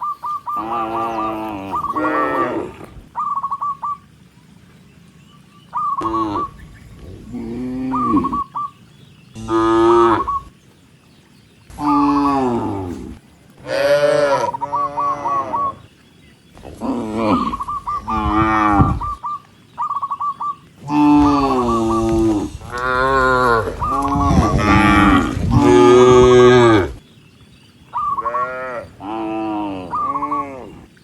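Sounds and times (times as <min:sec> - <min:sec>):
cows mooing: 0:00.6 - 0:03.0, 0:06.0 - 0:08.6, 0:09.4 - 0:10.5, 0:11.7 - 0:15.8, 0:16.6 - 0:19.2, 0:20.8 - 0:27.0, 0:28.2 - 0:30.7.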